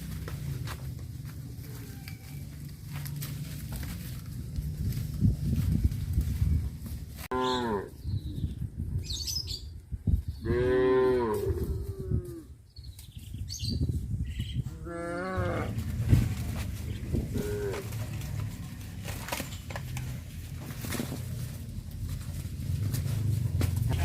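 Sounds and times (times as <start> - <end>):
cows mooing: 7.3 - 8.0, 10.4 - 12.5, 14.7 - 15.9, 17.3 - 18.3.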